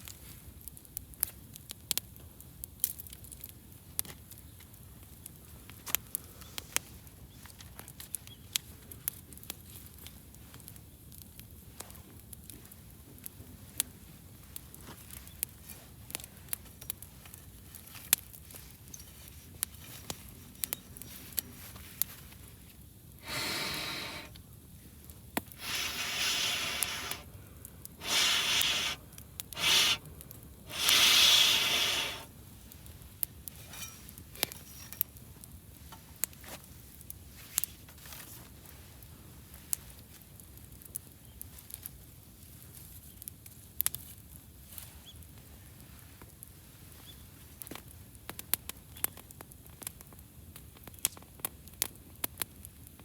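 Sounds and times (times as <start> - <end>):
loud rasping bursts: 23.2 - 24.4, 25.6 - 27.3, 28.0 - 30.0, 30.7 - 32.3
wood fire crackling and popping: 23.2 - 24.4, 25.0 - 35.2.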